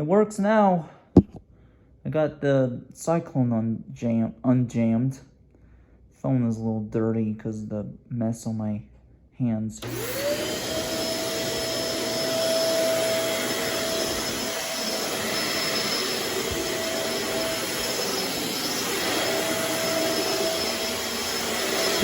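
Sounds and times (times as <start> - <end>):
vacuum airflow noise: 9.8 - 22.0
vacuum motor whine: 9.8 - 22.0.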